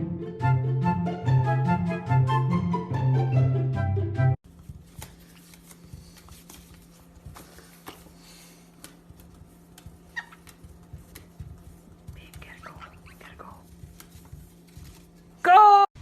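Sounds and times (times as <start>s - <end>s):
music track: 0.0s - 4.4s.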